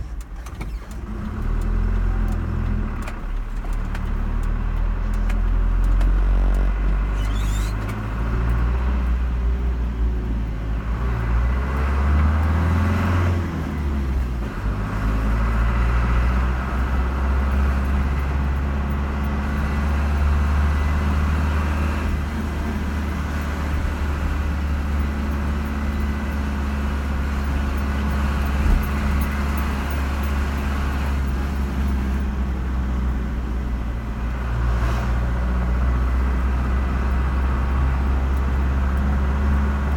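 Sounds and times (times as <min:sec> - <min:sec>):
car engine and tyre rumble: 0:00.0 - 0:39.9.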